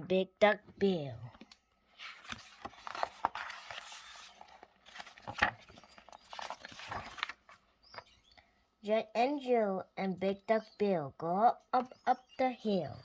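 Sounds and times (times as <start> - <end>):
paper page rustling: 1.3 - 8.1.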